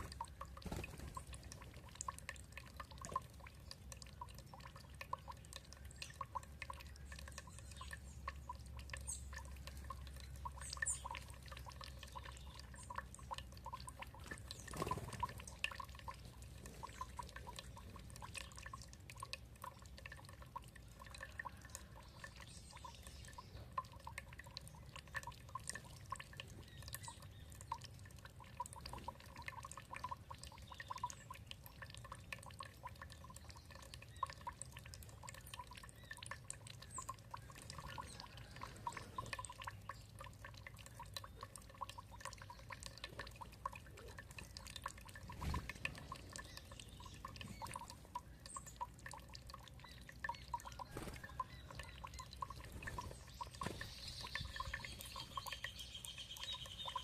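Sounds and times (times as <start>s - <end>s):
water trickling and dripping: 0.0s - 57.0s
faint high bird chirps: 49.8s - 57.0s.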